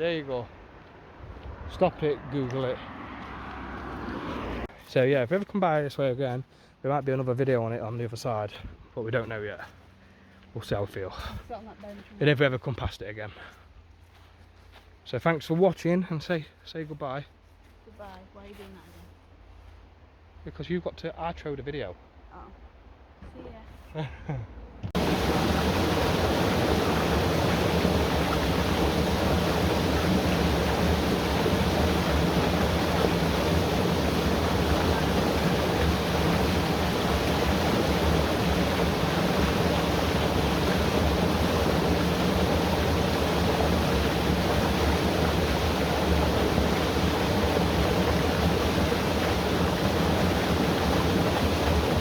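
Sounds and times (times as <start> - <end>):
rush of falling water: 25.0 - 52.0.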